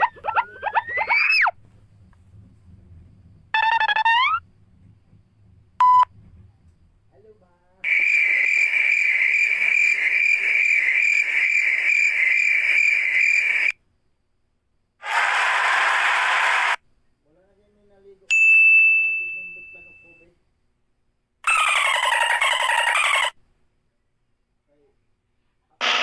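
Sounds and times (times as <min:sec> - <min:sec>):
short hiss burst: 0:15.0 - 0:16.8
bright ding: 0:18.3 - 0:20.2.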